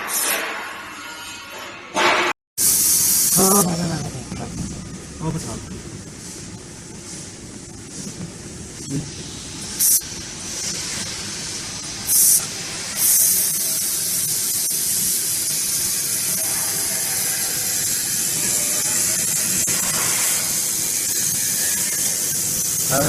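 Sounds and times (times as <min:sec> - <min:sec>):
welding gun gas hissing: 0:02.6 - 0:03.7, 0:09.0 - 0:23.0.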